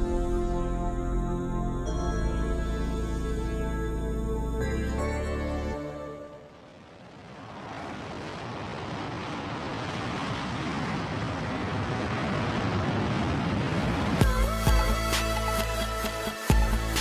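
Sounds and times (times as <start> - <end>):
music: 0.0 - 6.6, 14.2 - 17.0
steady rushing jet noise: 6.5 - 14.2.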